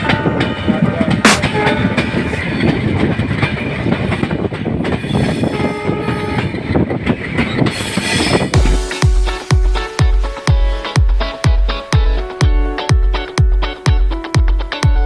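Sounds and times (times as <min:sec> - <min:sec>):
wheels clattering over rail joints: 0:00.0 - 0:08.5
passenger train rumbling on rails: 0:00.0 - 0:11.8.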